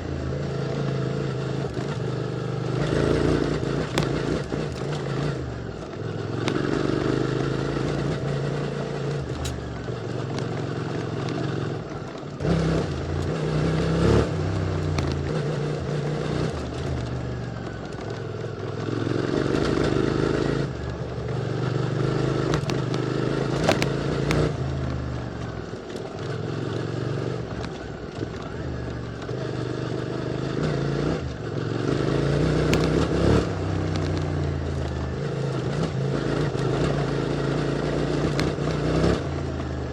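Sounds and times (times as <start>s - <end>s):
motorcycle engine revving: 0.0s - 39.9s
sharp clicks and clatter: 2.8s - 29.8s, 32.5s - 35.0s.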